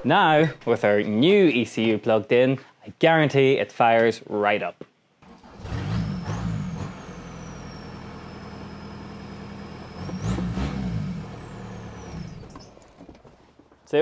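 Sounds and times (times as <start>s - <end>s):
engine revving: 5.2s - 12.8s
diesel engine starting and idling: 5.2s - 13.0s
high turbo whistle: 6.1s - 12.6s.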